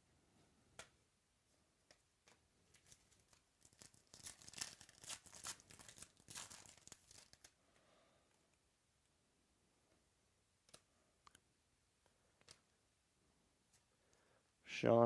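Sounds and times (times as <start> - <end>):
foil wrapper crinkling and tearing: 2.7 - 7.6.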